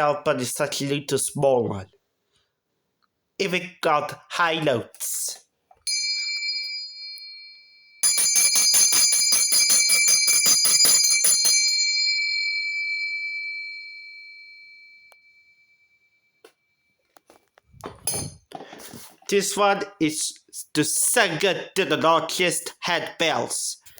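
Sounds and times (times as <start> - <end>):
handbell ringing: 5.9 - 15.5.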